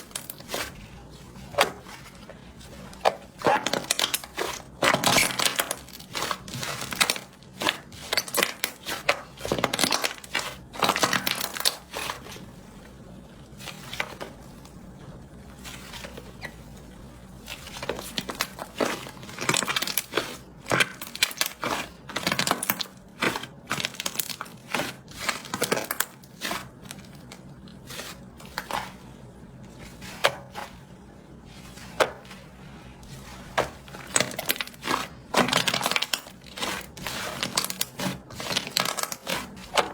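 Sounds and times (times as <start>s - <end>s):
slime popping and crackling: 3.0s - 11.8s.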